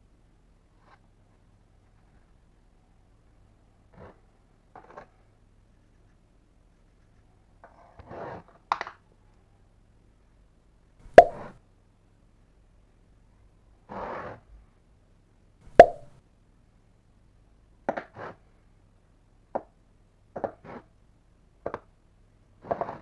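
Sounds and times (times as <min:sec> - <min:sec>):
light taps and clicks: 0:11.1 - 0:11.5, 0:15.7 - 0:16.1
sharp ringing knocks: 0:11.2 - 0:11.5, 0:15.8 - 0:16.1.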